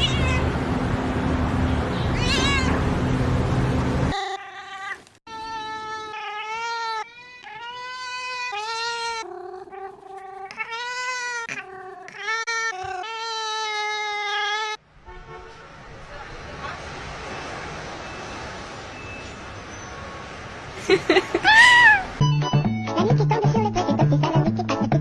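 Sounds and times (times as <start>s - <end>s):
cat meowing: 0.0s - 0.5s, 1.9s - 2.8s, 4.1s - 14.8s, 21.3s - 22.2s
cat yowling: 0.0s - 0.5s, 1.9s - 2.8s, 4.1s - 14.8s, 21.2s - 22.2s.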